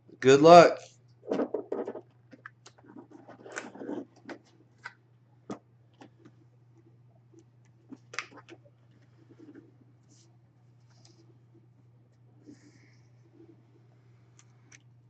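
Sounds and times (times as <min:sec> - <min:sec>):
low electrical hum: 0:00.0 - 0:15.0
packaging rustling and scraping: 0:02.7 - 0:04.6.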